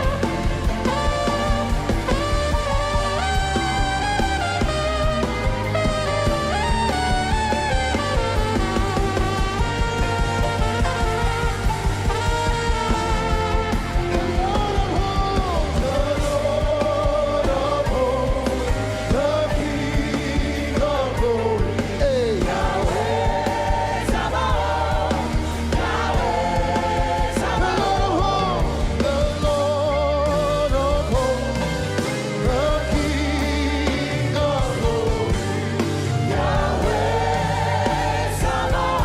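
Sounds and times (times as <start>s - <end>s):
bass line: 0.0s - 39.0s
people singing gospel: 0.0s - 39.0s.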